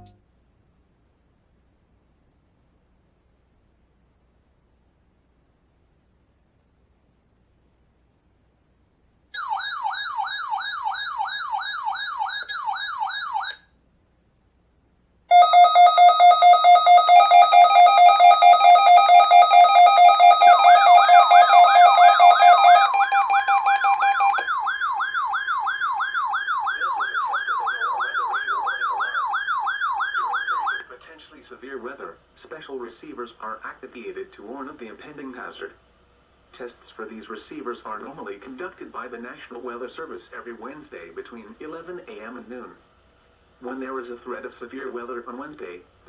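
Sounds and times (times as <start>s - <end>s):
warbling alarm: 9.4s - 13.6s, 15.3s - 30.8s
rapid beeping tones: 15.3s - 29.6s.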